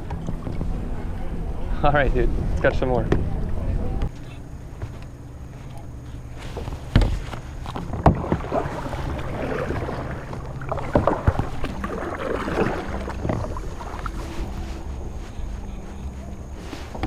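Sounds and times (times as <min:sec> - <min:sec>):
paddle strokes splashing water: 0:05.5 - 0:17.0.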